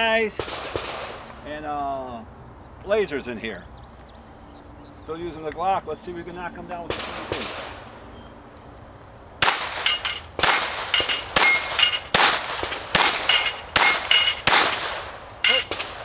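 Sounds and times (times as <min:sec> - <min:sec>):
steel plate clanging: 0:09.4 - 0:15.8
pistol shots: 0:09.4 - 0:16.0.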